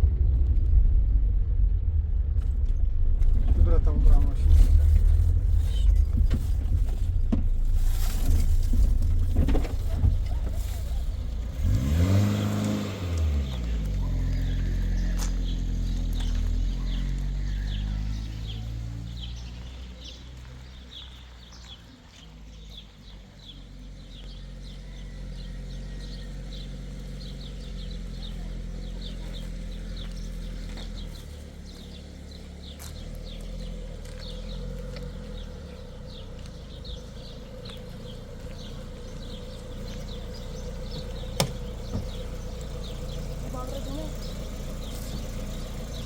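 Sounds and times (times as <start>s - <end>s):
low steady rumble: 0.0s - 20.8s, 23.6s - 46.0s
small bird chirping: 13.4s - 46.0s.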